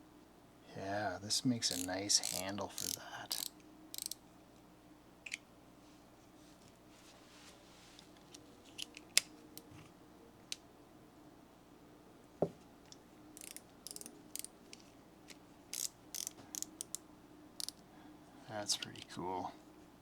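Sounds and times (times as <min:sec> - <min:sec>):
small metal tool parts clicking: 0:01.7 - 0:04.2, 0:08.7 - 0:09.7, 0:13.4 - 0:17.0.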